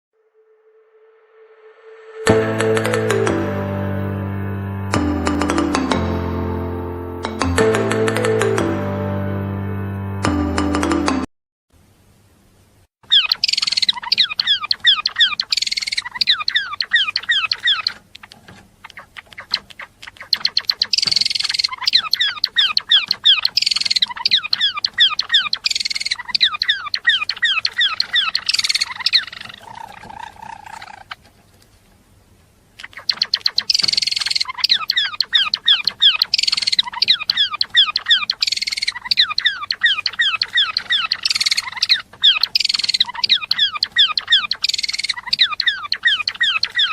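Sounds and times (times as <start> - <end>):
sparrow singing: 13.0 - 31.2, 32.8 - 46.9.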